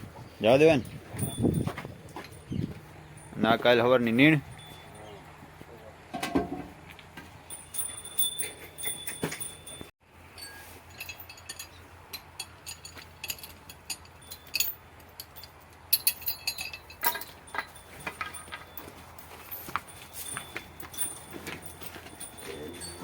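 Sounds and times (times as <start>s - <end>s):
cattle neck bells jingling: 0.4s - 5.8s, 7.3s - 23.0s
metal clinking: 0.6s - 5.3s, 7.4s - 23.0s
high ringing tones: 0.7s - 5.7s, 7.4s - 11.8s.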